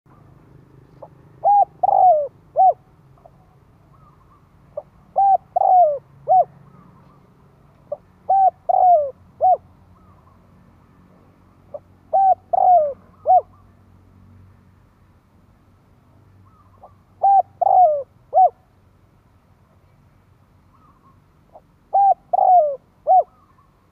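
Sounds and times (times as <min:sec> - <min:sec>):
dove cooing: 0:00.9 - 0:07.2, 0:07.9 - 0:10.4, 0:11.7 - 0:13.7, 0:16.5 - 0:18.6, 0:20.7 - 0:23.9.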